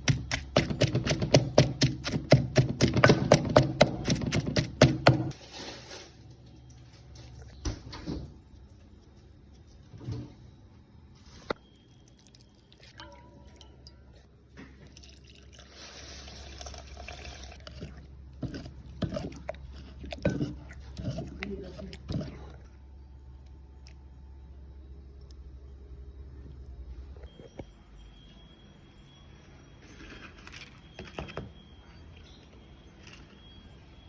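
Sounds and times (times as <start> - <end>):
liquid pouring: 14.8 - 17.7.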